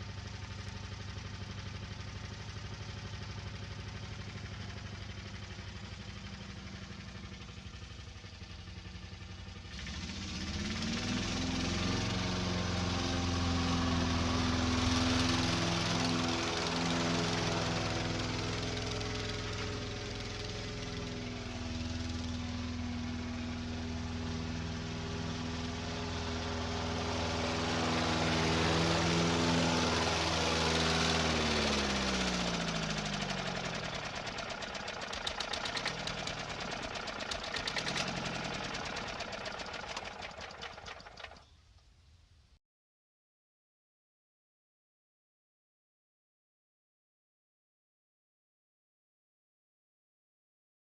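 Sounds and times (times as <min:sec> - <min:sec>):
engine winding down: 0:00.0 - 0:41.5
fast clattering ticks: 0:34.2 - 0:41.4.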